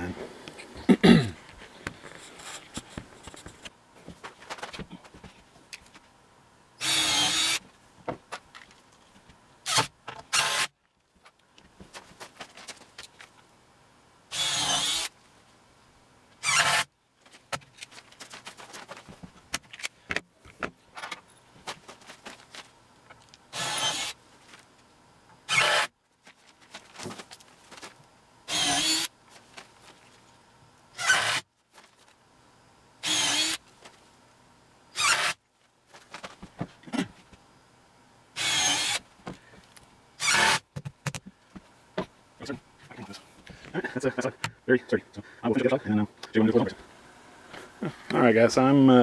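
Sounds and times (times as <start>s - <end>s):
small clicks and handling noises: 1.5s - 6.1s, 10.8s - 13.5s, 17.2s - 23.4s
power drill running: 6.8s - 7.6s, 9.7s - 10.7s, 14.3s - 15.1s, 16.4s - 16.9s, 23.5s - 24.2s, 25.5s - 25.9s, 28.5s - 29.1s, 31.0s - 31.4s, 33.0s - 33.6s, 35.0s - 35.4s, 38.4s - 39.0s, 40.2s - 40.6s.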